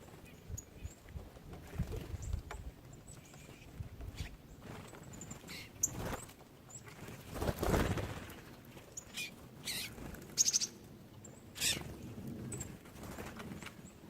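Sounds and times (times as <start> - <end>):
small birds chirping: 0.0 - 1.2, 1.8 - 7.5, 8.7 - 12.8.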